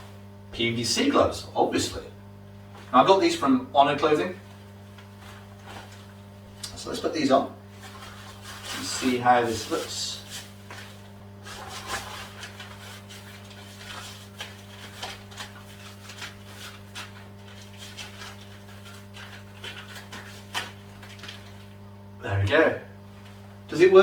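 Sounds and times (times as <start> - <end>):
steady low hum: 0.0 - 24.0
vinyl gloves rubbing and rustling: 4.4 - 22.1.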